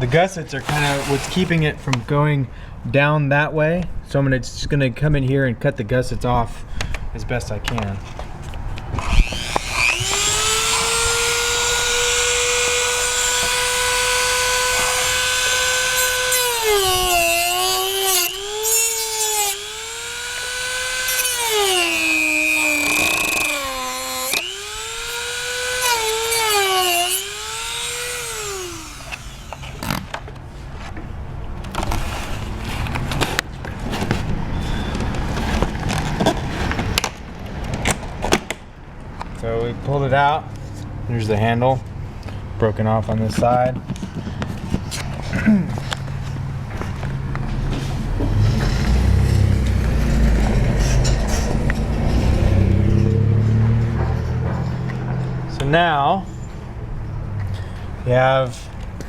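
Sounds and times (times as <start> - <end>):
knocks and scrapes: 0.0 - 2.1, 29.1 - 38.5, 43.3 - 55.5
rotary tool whining: 0.6 - 1.6, 8.9 - 30.2.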